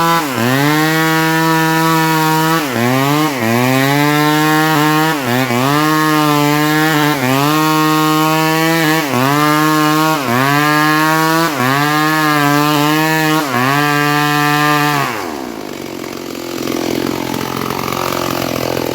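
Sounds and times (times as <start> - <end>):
chainsaw cutting wood: 0.0 - 18.9.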